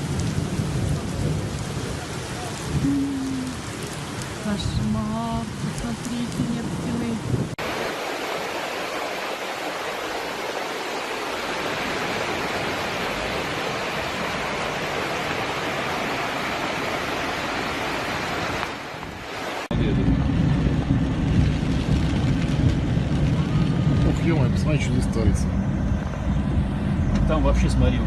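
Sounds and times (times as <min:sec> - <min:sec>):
floodwater rushing: 0:00.0 - 0:28.0
loud low rumble: 0:19.7 - 0:28.0.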